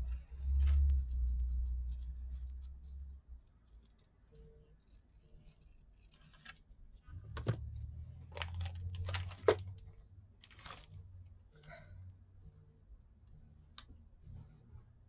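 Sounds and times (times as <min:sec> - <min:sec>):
low hum: 0:00.0 - 0:03.3
faint scratches: 0:00.0 - 0:06.8.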